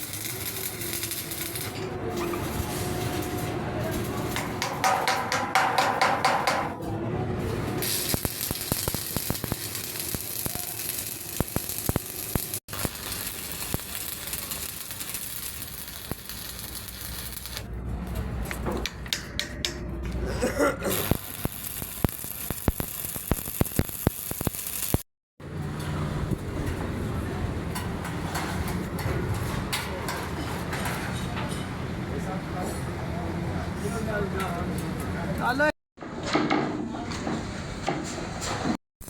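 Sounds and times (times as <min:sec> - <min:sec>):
welding arc crackling: 0:00.0 - 0:04.7, 0:07.8 - 0:17.7, 0:20.8 - 0:25.0.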